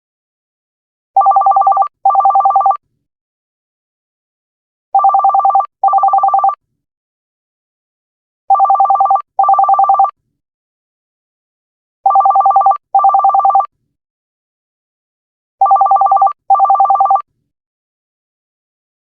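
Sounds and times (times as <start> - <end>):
office telephone ringing: 1.2 - 2.7, 5.0 - 6.5, 8.5 - 10.1, 12.1 - 13.6, 15.6 - 17.2.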